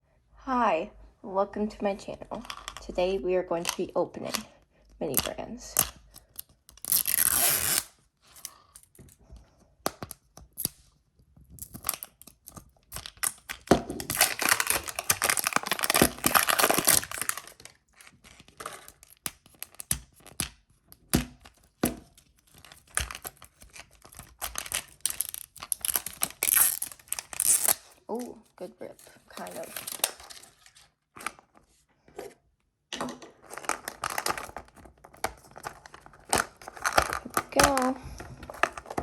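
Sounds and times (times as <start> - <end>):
plastic wrap tearing: 6.3 - 8.7, 11.6 - 20.4, 22.4 - 28.4, 29.2 - 31.4
plastic crackling and clicking: 11.6 - 28.3, 29.3 - 31.4, 33.0 - 39.0.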